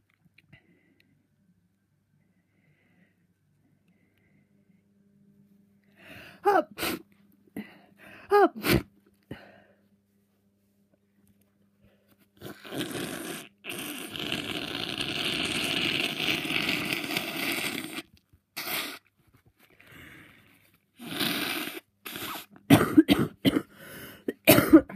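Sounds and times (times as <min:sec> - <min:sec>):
person blowing nose: 0:06.5 - 0:07.0, 0:12.4 - 0:19.1, 0:21.0 - 0:22.6.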